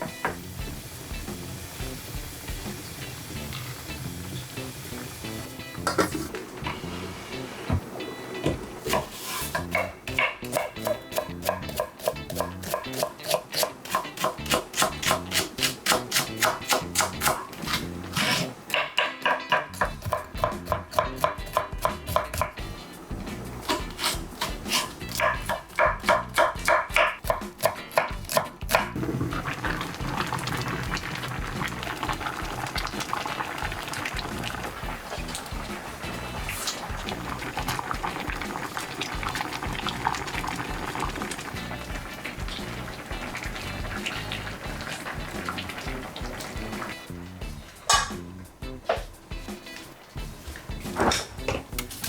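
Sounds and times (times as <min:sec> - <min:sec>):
pot simmering and bubbling: 0:00.0 - 0:19.0, 0:19.6 - 0:27.3, 0:28.1 - 0:52.0
knife chopping on cutting board: 0:08.9 - 0:22.6, 0:23.6 - 0:29.0.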